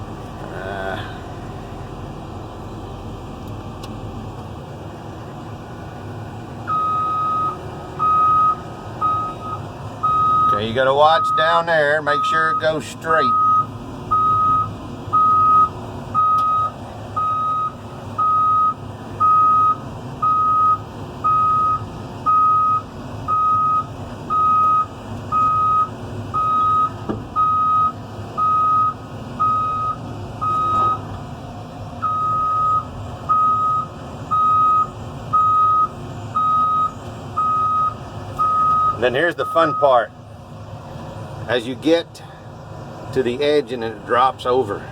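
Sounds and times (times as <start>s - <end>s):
diesel engine running: 0.0s - 44.9s
excavator travel alarm beeping: 6.7s - 31.1s, 32.0s - 40.1s.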